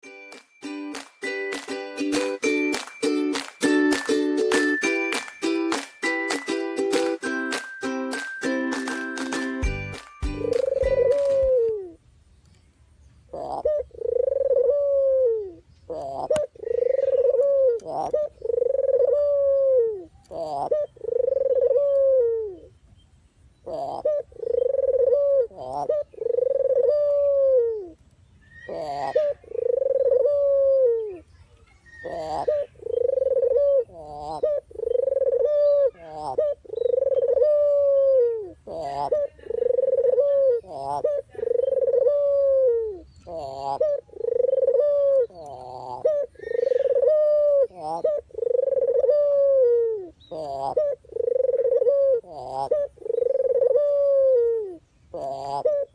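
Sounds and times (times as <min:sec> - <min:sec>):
dove cooing: 0:10.4 - 0:12.0, 0:13.3 - 0:22.7, 0:23.6 - 0:28.0, 0:28.6 - 0:31.3, 0:31.9 - 0:55.9.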